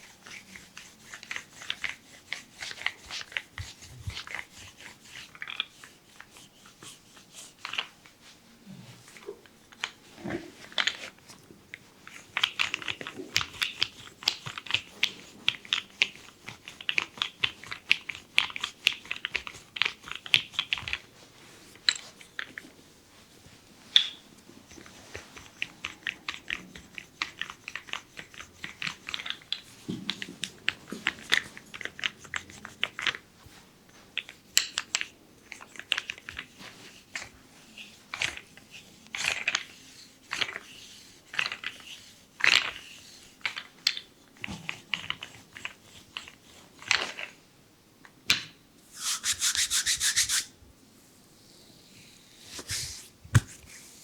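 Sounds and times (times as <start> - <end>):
hands rubbing bare skin: 0.0 - 9.2, 48.8 - 50.6, 52.0 - 54.0.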